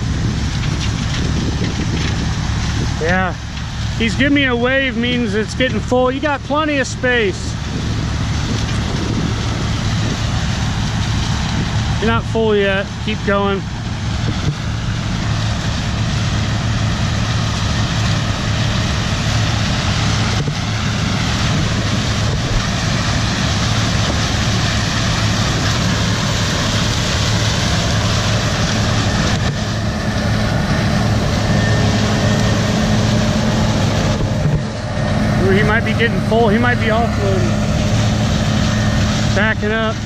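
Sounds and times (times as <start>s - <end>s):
farm machinery engine running: 0.0s - 40.0s.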